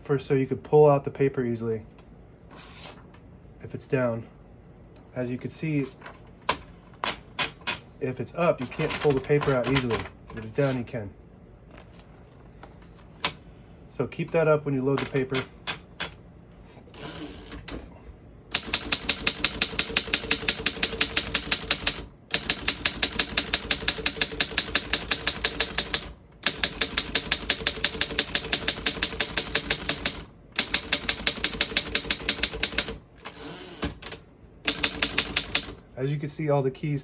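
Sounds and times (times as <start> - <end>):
typewriter typing fast: 8.6 - 10.1, 18.5 - 35.8.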